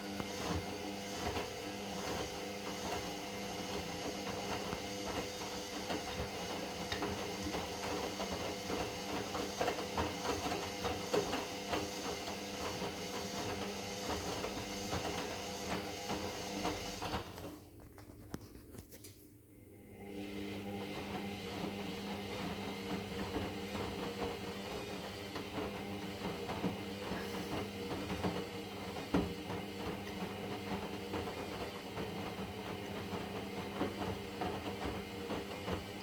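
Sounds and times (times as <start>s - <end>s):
washing machine drum motor humming: 0.0s - 17.5s, 19.9s - 36.0s
small knocks in washing machine: 22.9s - 36.0s.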